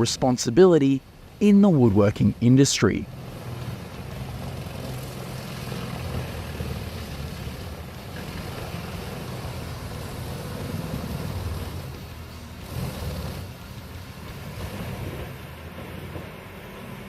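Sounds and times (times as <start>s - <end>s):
diesel engine drone: 0.0s - 17.0s
hiss of material grinding: 3.5s - 15.4s.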